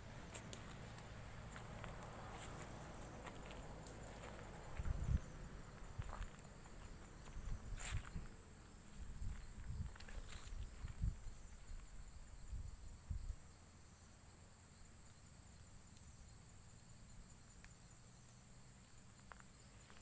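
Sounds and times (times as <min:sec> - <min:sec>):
low thumps and rumbles: 0:00.0 - 0:08.3
insects droning: 0:00.0 - 0:20.0.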